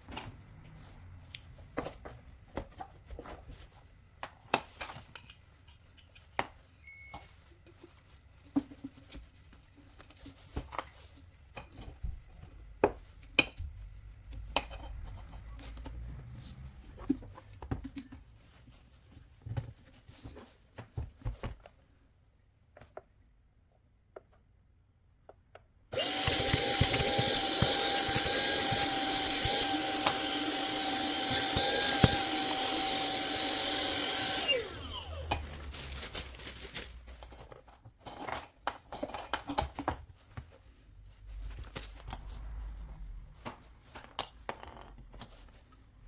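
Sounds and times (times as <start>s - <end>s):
hard objects clicking and knocking: 26.0s - 35.5s.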